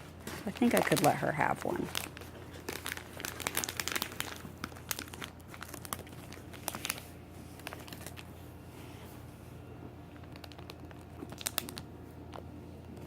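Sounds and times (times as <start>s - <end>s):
plastic packaging crinkling: 0.2s - 9.2s, 10.1s - 12.4s.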